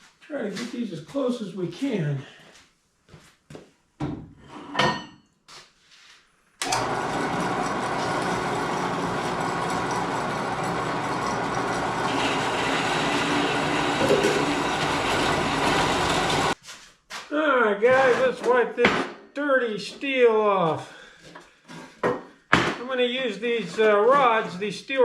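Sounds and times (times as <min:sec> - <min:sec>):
wet saw cutting steel rod: 0:06.8 - 0:16.6.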